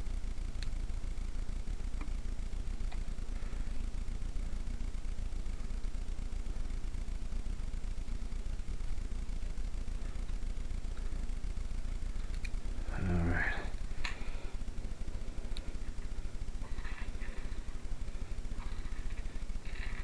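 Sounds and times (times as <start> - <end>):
low background rumble: 0.0 - 20.0
faint light clicks: 12.2 - 12.6.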